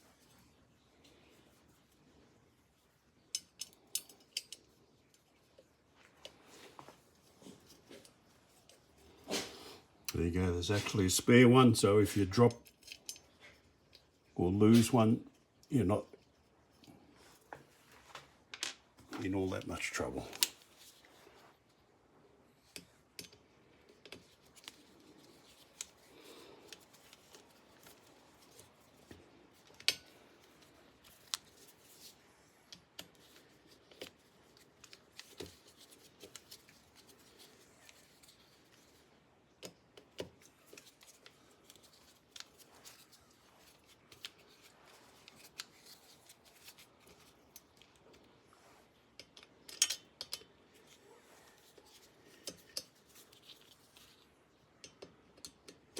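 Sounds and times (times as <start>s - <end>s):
metallic clicks of parts and tool: 3.2s - 6.4s, 12.5s - 14.2s, 22.7s - 28.7s, 29.6s - 39.0s, 49.1s - 50.9s, 54.8s - 55.9s.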